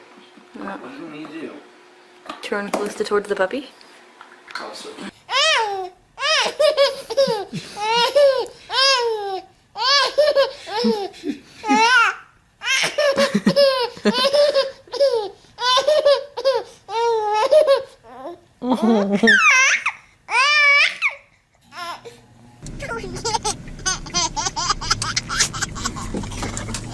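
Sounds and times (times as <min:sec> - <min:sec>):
baby laughing: 0:05.3 - 0:22.1, 0:22.8 - 0:26.9.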